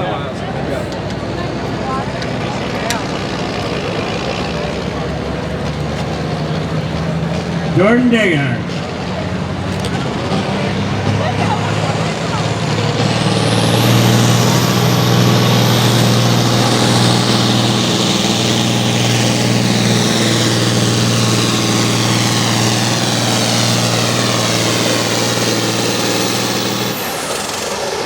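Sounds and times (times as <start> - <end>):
tractor engine at full throttle: 0.0 - 28.0
high whine: 10.3 - 28.0.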